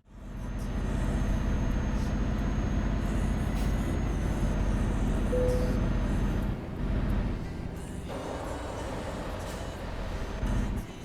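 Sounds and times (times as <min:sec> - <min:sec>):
vehicle engine rumbling: 0:00.1 - 0:11.0
short steady tone: 0:05.3 - 0:05.8.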